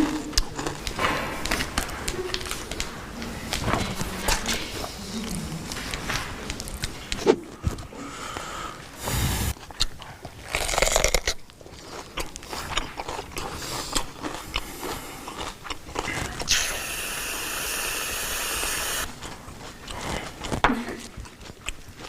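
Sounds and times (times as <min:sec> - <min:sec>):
crunchy food being eaten: 0:00.0 - 0:07.9, 0:09.0 - 0:22.0
steady hiss: 0:08.5 - 0:09.6, 0:16.5 - 0:19.1.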